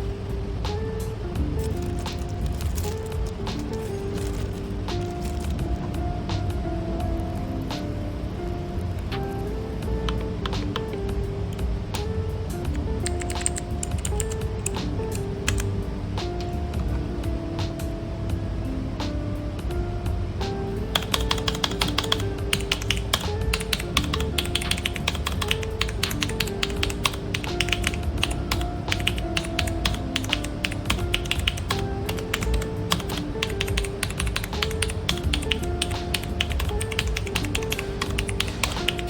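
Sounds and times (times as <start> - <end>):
background music: 0.0 - 39.0
mechanical keyboard typing: 3.8 - 5.6, 13.0 - 14.4, 15.5 - 15.7, 20.9 - 39.0.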